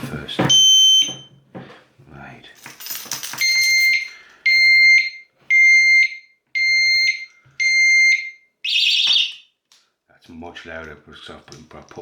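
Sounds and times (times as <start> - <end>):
high-pitched alarm beeps: 0.5 - 1.3, 3.4 - 9.4.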